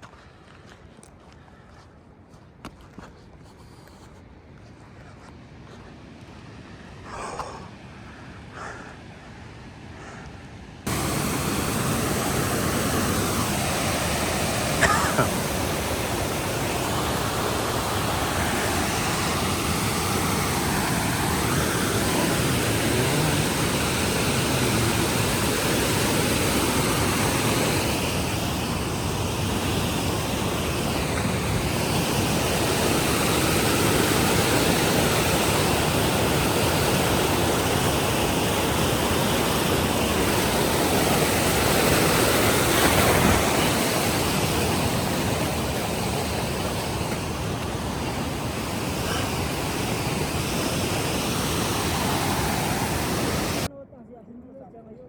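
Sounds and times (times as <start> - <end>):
fast-flowing river rushing: 10.9 - 53.7.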